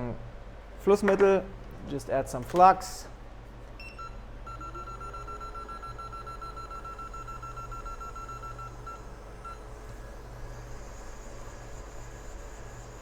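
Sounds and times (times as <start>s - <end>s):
fan humming: 0.0s - 13.0s
electronic beep: 3.8s - 9.6s.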